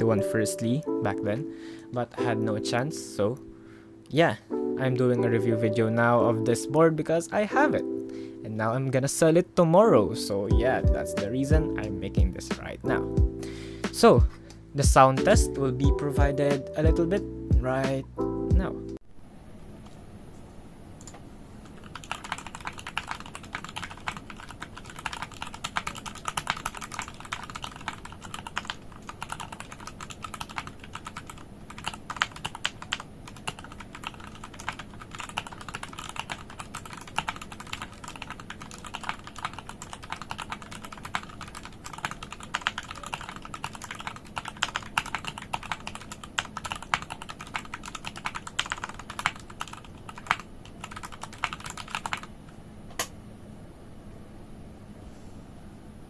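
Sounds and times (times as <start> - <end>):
mechanical keyboard typing: 21.6 - 52.3.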